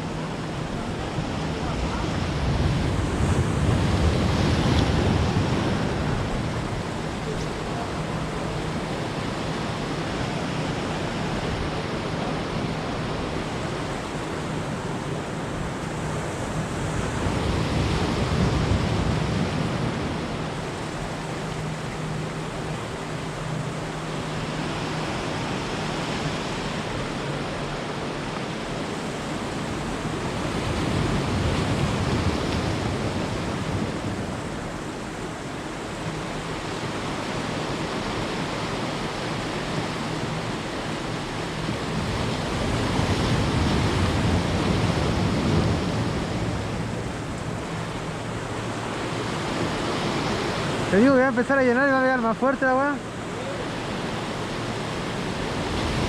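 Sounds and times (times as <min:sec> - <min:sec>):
sea surf washing: 0:00.0 - 0:56.0
waves breaking: 0:00.0 - 0:56.0.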